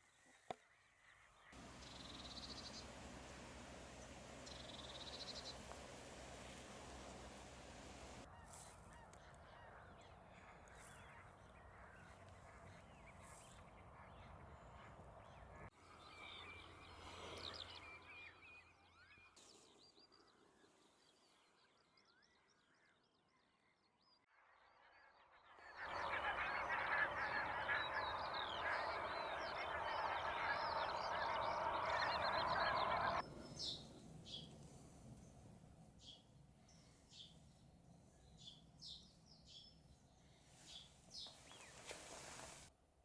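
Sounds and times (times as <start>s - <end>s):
waterbirds calling: 1.5s - 15.7s, 25.8s - 34.5s, 40.8s - 42.7s.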